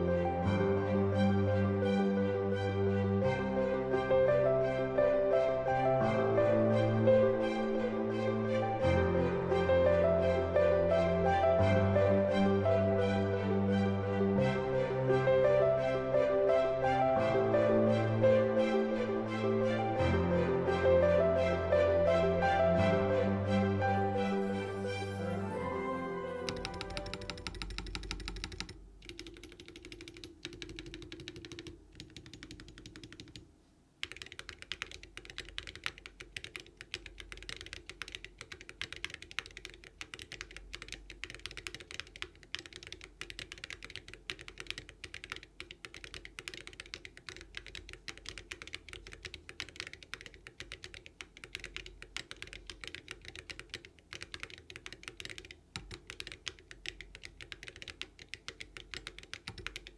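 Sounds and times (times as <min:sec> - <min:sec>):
mechanical keyboard typing clacks: 0:26.4 - 0:59.9.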